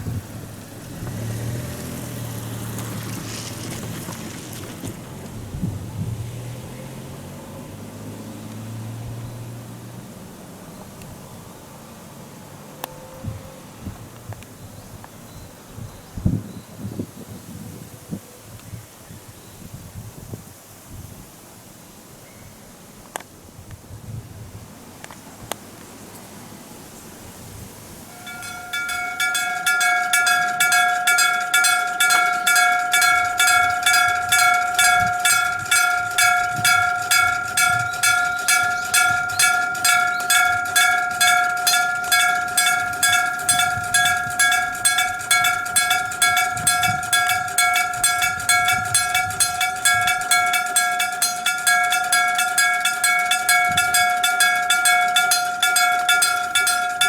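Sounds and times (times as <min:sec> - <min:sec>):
level crossing warning bell: 0:28.1 - 0:57.0.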